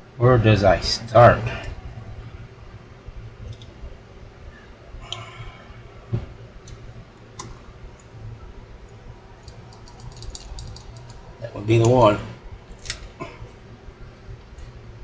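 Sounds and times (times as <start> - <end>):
small metal parts clicking: 9.4 - 11.2, 12.8 - 13.2.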